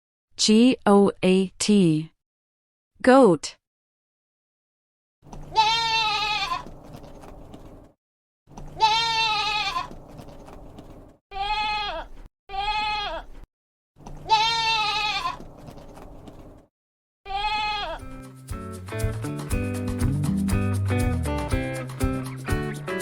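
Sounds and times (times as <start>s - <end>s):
goat bleating: 5.5s - 6.8s, 8.8s - 10.0s, 11.3s - 13.4s, 14.1s - 15.5s, 17.3s - 18.1s
music: 18.0s - 23.0s.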